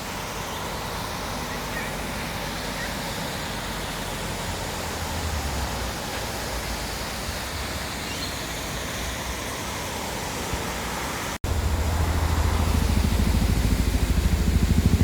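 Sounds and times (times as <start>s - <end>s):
waterfall rushing: 0.0s - 14.7s.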